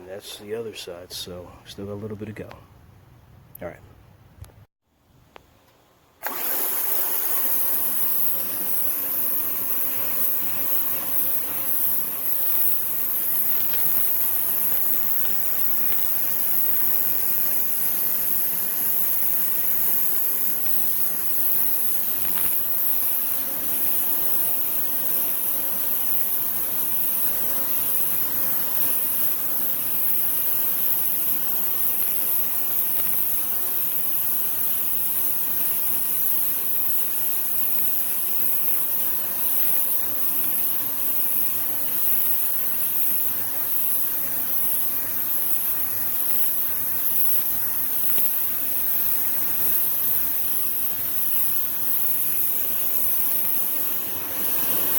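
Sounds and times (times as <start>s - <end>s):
pressure washer motor humming: 6.2s - 42.3s, 47.4s - 54.9s
high-pressure water jet hissing: 6.2s - 54.9s.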